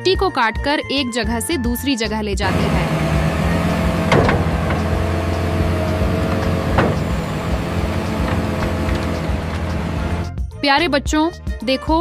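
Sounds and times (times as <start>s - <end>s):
heavy vehicle engine running: 2.4s - 10.4s.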